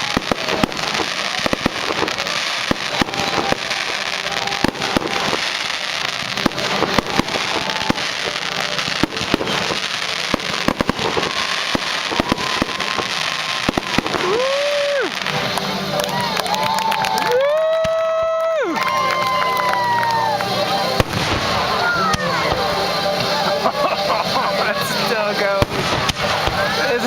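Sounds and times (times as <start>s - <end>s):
crowd cheering: 0.0s - 27.0s
fireworks bangs and crackles: 0.0s - 27.0s
person whooping: 13.8s - 15.2s, 16.0s - 20.9s.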